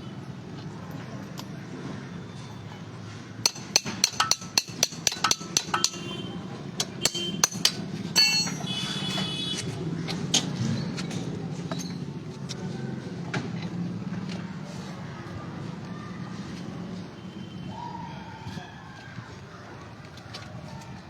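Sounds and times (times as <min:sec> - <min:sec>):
hammer tapping on metal: 0:03.4 - 0:08.8
loose metal parts clinking: 0:06.8 - 0:08.8.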